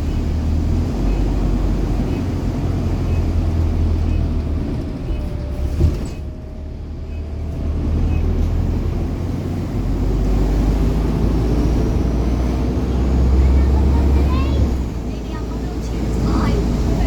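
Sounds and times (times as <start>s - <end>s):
bus engine droning: 0.0s - 17.0s.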